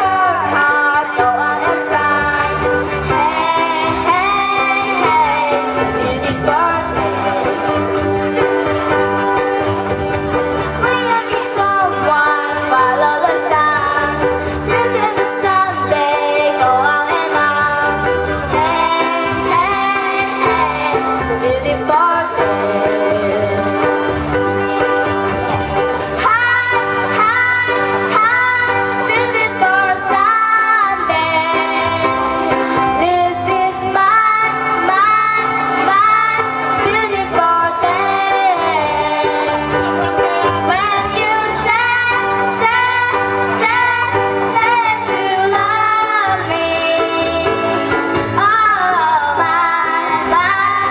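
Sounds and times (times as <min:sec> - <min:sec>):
group singing: 0:00.0 - 0:08.2, 0:10.8 - 0:24.2, 0:33.0 - 0:50.9.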